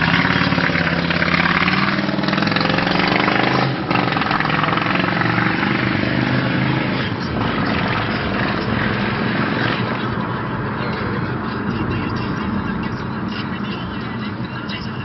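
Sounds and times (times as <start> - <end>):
loud motorcycle engine running: 0.0 - 10.4.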